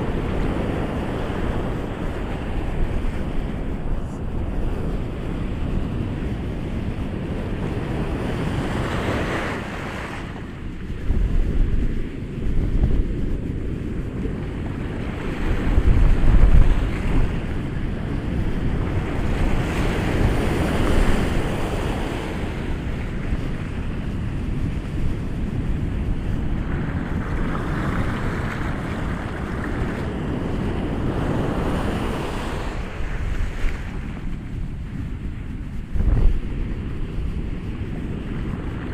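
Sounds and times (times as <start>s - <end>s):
ocean surf breaking: 0.0s - 38.9s
wind rumble on microphone: 0.0s - 38.9s.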